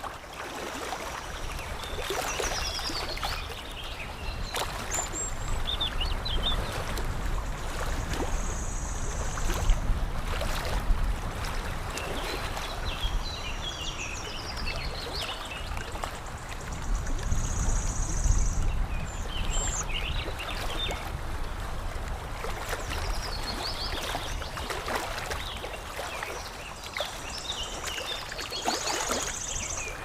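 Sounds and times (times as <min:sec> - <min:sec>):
water lapping and trickling: 0:00.0 - 0:30.0.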